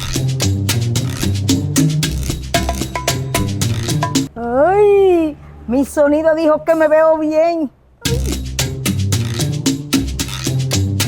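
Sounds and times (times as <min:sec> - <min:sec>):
upbeat latin music: 0:00.0 - 0:04.3, 0:08.0 - 0:11.0.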